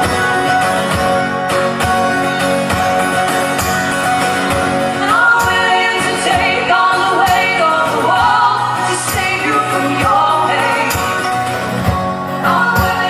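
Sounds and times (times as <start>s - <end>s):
strummed acoustic guitars: 0.0s - 13.0s
voices singing in harmony: 5.0s - 11.5s, 12.4s - 13.0s.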